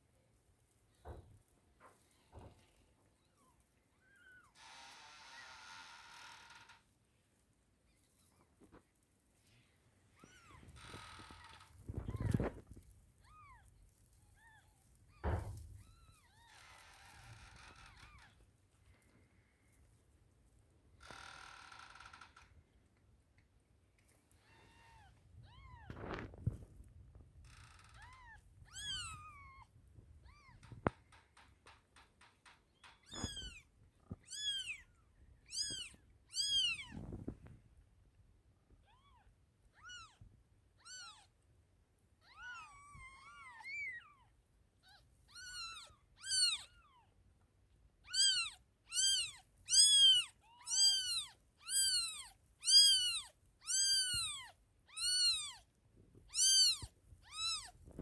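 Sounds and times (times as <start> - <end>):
kittens mewing: 27.9 - 30.9, 33.0 - 34.9, 44.8 - 47.0, 48.0 - 55.7, 56.3 - 58.0.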